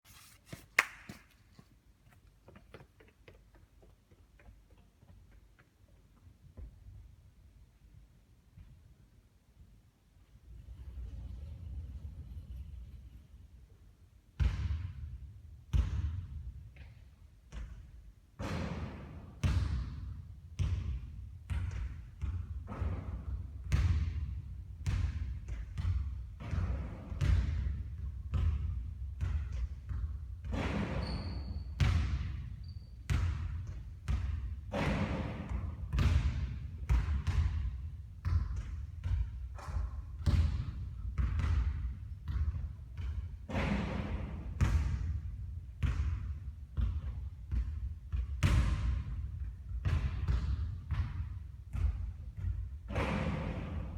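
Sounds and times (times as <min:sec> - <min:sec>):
basketballs bouncing on court: 0:14.4 - 0:53.9.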